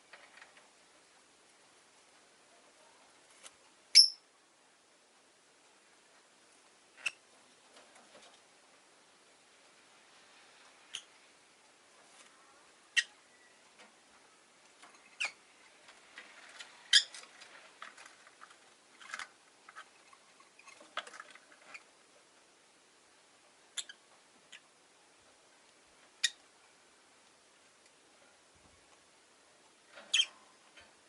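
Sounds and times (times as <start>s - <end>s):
lovebirds chirping: 3.9s - 4.2s, 12.8s - 13.8s, 15.0s - 15.6s, 23.7s - 24.6s.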